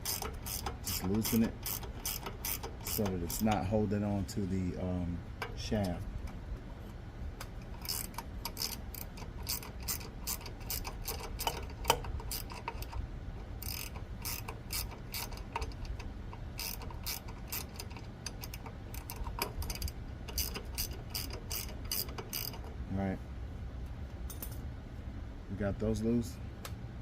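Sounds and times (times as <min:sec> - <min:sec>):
ratchet wrench clicking: 0:00.0 - 0:03.8, 0:07.6 - 0:22.8.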